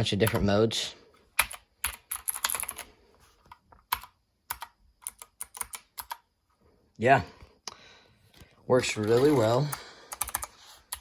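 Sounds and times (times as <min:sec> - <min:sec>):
mechanical keyboard clicking: 0:01.4 - 0:02.8, 0:03.8 - 0:06.2, 0:10.1 - 0:11.0.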